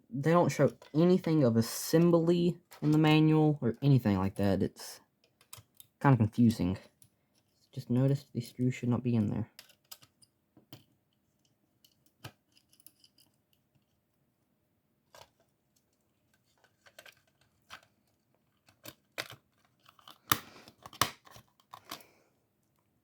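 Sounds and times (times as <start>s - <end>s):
plastic parts clicking: 5.2s - 6.0s, 9.5s - 10.9s, 15.1s - 22.1s.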